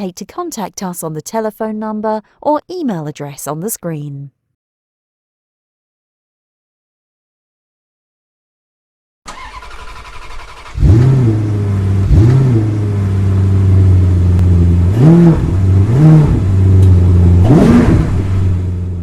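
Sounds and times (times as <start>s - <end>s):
car engine revving: 9.3s - 19.0s
car engine starting: 9.3s - 19.0s.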